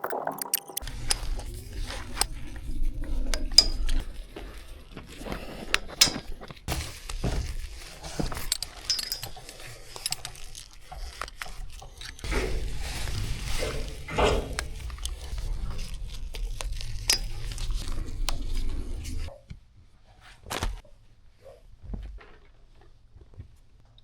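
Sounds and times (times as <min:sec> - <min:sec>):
metal hardware clinking: 0:00.5 - 0:19.3
low rumble: 0:00.8 - 0:08.4, 0:12.1 - 0:19.3
rustling: 0:00.8 - 0:19.3.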